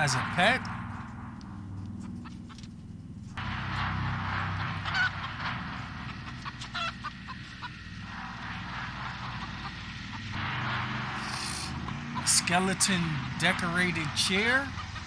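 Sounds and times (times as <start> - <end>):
steady low drone: 0.0 - 15.0
chicken squawking: 6.4 - 7.8.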